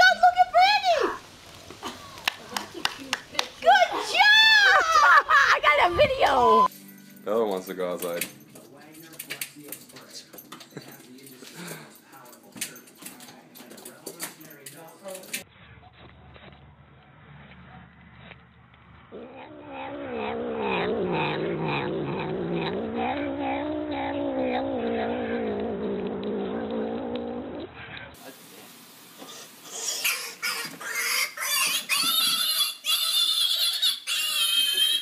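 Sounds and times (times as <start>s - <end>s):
cat yowling: 19.2s - 25.4s.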